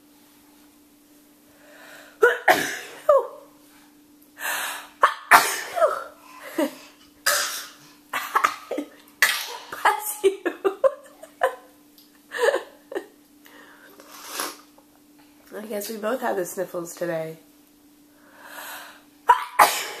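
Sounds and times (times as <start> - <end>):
person coughing: 2.2 - 3.3, 5.0 - 10.4, 19.3 - 20.0
person sneezing: 2.2 - 3.3, 5.0 - 10.2, 19.3 - 20.0.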